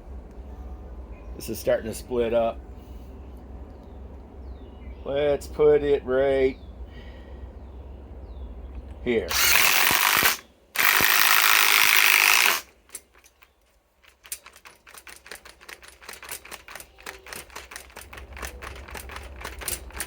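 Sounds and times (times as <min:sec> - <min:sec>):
impact wrench hammering: 0:09.3 - 0:13.3.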